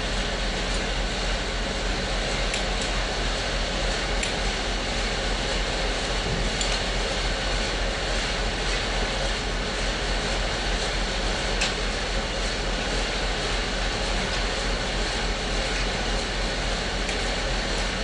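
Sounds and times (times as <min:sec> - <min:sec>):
sawmill machinery drone: 0:00.0 - 0:18.0.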